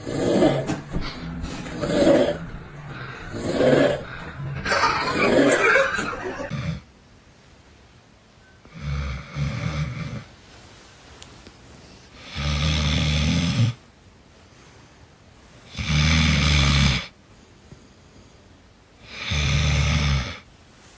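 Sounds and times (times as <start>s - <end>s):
low buzzing snores: 0.0s - 4.4s, 6.5s - 6.9s, 8.6s - 10.4s, 12.1s - 13.8s, 15.7s - 17.2s, 19.0s - 20.5s
quiet breaths: 0.0s - 4.6s, 6.5s - 20.9s
mixed burst of sound: 0.0s - 6.5s.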